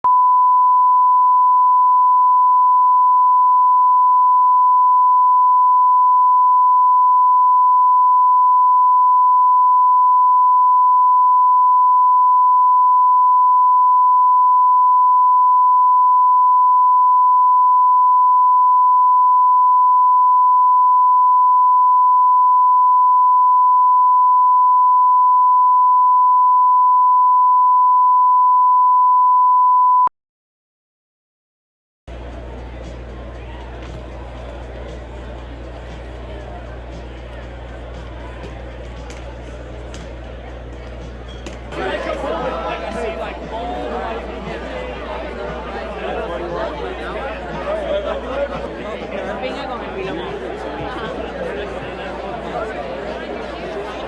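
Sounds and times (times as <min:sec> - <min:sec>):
steady sine test tone: 0:00.0 - 0:30.1.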